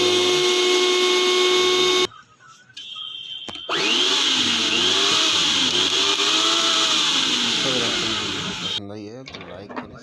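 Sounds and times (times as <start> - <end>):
mixer grinder motor whine: 0.0 - 2.1, 3.7 - 8.8.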